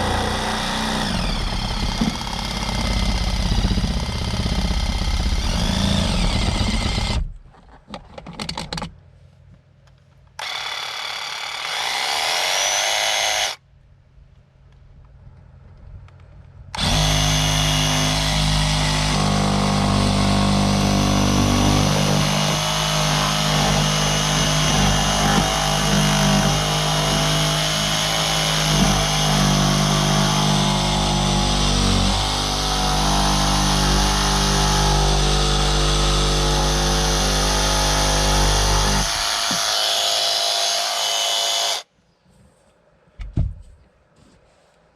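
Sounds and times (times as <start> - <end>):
power tool cutting panel: 0.0 - 7.3, 10.4 - 13.6, 16.8 - 41.8.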